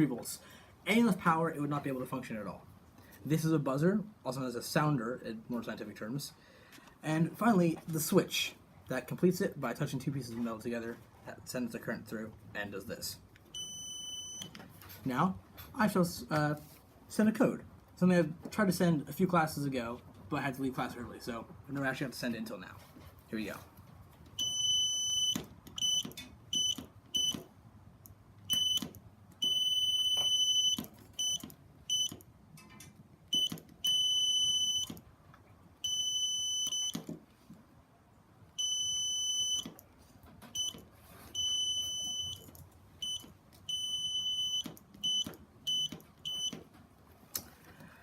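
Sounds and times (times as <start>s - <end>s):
buzzer beeping morse code: 13.6s - 14.5s, 38.6s - 39.6s, 41.4s - 42.4s.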